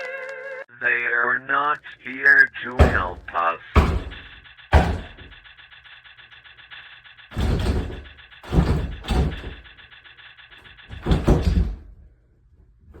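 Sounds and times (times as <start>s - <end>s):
heavy thuds: 2.7s - 5.9s, 7.2s - 12.1s.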